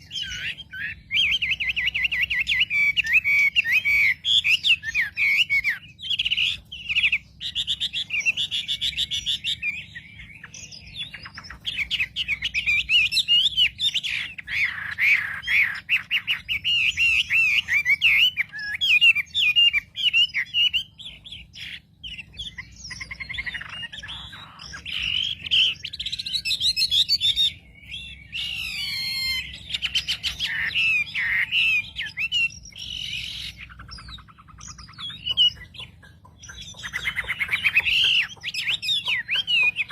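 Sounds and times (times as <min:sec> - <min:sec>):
bird chirping and warbling: 0:00.0 - 0:39.9.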